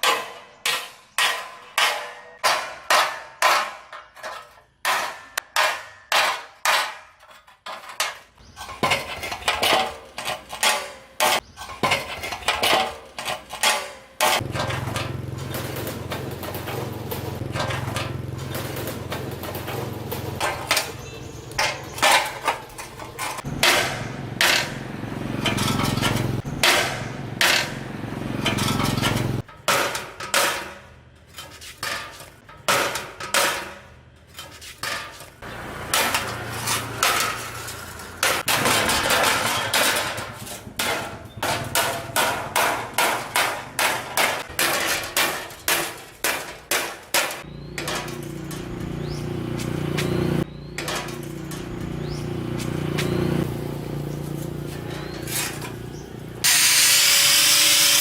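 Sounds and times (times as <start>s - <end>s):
small engine running: 14.4s - 21.4s, 23.5s - 29.4s, 47.5s - 58.0s.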